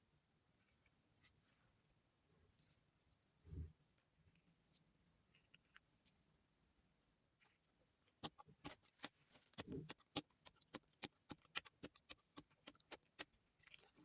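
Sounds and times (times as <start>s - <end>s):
slime squelch: 7.3s - 14.0s.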